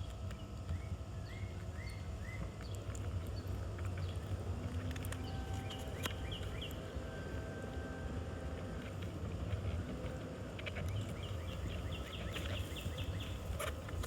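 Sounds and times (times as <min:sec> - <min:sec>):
small birds chirping: 0:00.0 - 0:07.0, 0:10.7 - 0:14.0
low outdoor rumble: 0:00.0 - 0:14.0.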